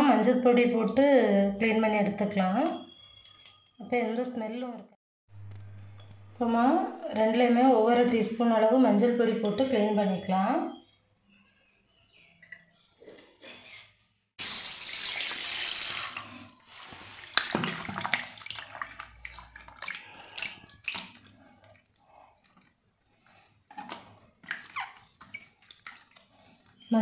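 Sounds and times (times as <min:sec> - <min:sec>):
kitchen tap running: 0:14.4 - 0:16.4
water splashing and sloshing: 0:14.8 - 0:26.8.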